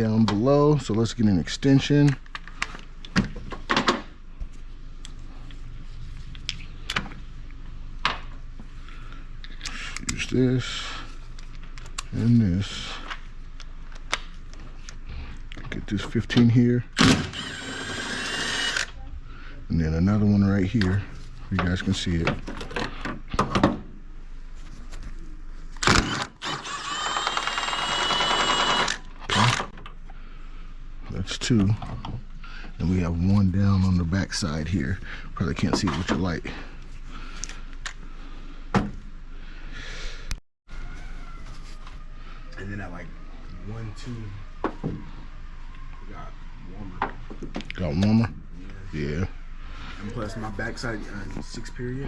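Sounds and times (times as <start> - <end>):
steady low hum: 0.0 - 40.4
cordless power tool whining: 17.0 - 19.0, 25.8 - 29.7.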